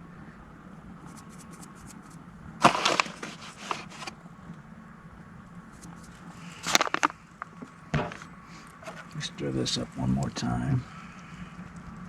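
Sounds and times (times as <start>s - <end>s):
steady low hum: 0.0s - 12.0s
cooking gear scraping and rattling: 2.6s - 4.1s, 5.8s - 9.3s.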